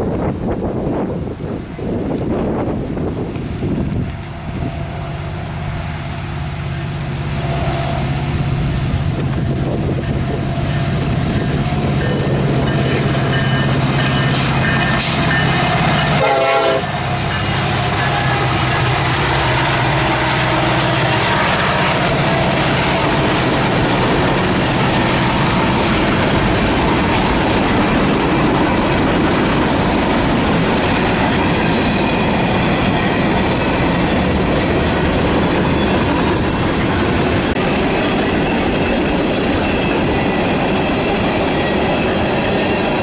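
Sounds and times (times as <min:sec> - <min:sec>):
diesel locomotive engines droning: 0:00.0 - 0:43.0
train air horn: 0:14.3 - 0:23.4.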